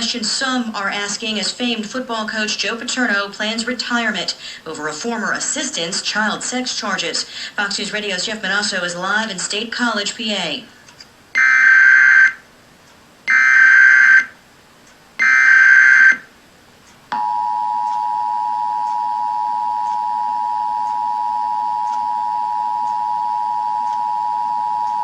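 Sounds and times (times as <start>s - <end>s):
two-tone attention signal: 17.2s - 25.0s.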